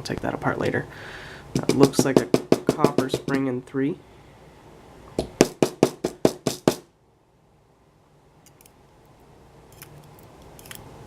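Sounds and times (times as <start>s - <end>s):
lock knocking on hard surface: 1.6s - 3.4s, 5.2s - 6.8s.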